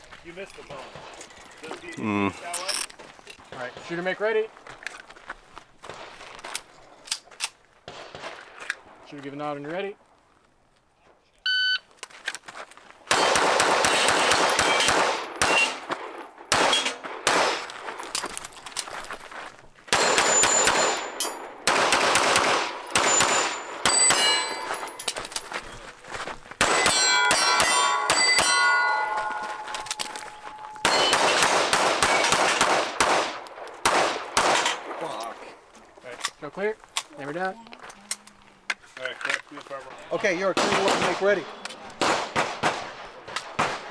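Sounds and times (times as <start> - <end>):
shot timer beep: 11.5 - 11.8
steel targets ringing: 13.1 - 18.1, 20.0 - 25.8, 26.6 - 32.6
pistol shots: 13.1 - 18.4, 19.9 - 25.8, 26.6 - 35.4, 40.3 - 43.9.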